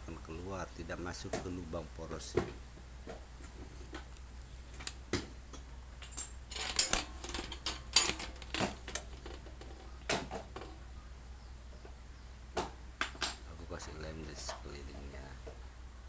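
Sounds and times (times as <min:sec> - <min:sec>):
hard objects knocking and clinking: 0:05.2 - 0:10.8.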